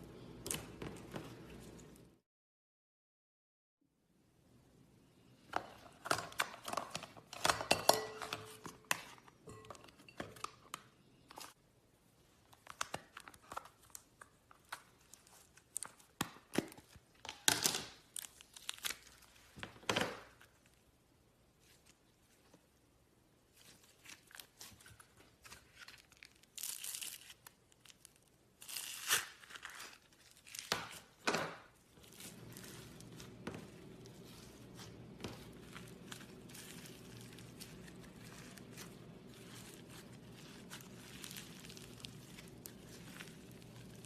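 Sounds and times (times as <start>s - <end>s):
slime squished by hand: 32.0s - 44.0s.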